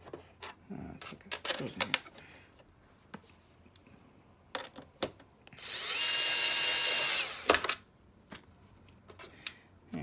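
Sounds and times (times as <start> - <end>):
electric screwdriver whining: 5.6 - 7.8.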